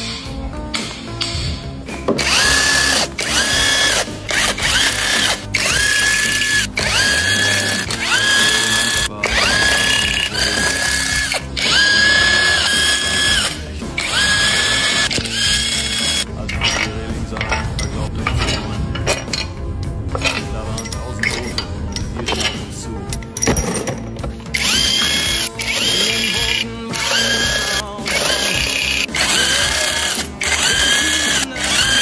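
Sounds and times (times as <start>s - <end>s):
power tool whining in bursts: 2.2s - 16.3s, 24.6s - 32.0s.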